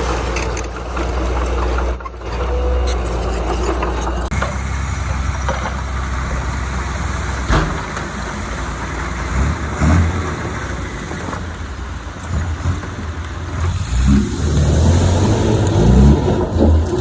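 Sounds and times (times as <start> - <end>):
diesel engine rumble: 0.0 - 17.0
short metal clanks: 7.5 - 8.5.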